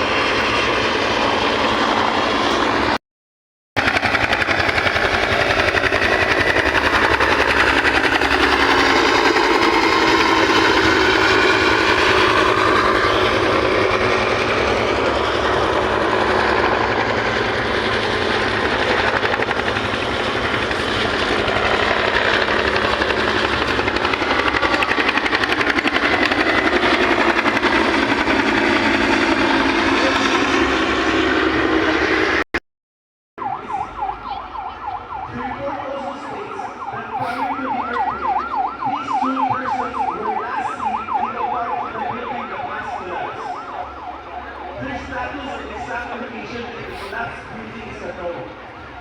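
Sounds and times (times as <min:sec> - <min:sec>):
helicopter engine and rotor: 0:00.0 - 0:03.0, 0:03.8 - 0:32.5, 0:33.4 - 0:49.0.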